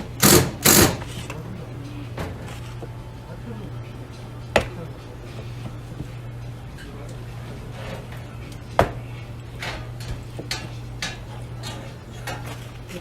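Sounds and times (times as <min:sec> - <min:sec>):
utensils and dishes clattering: 0:00.0 - 0:06.1, 0:06.7 - 0:13.0
low hum: 0:00.0 - 0:13.0.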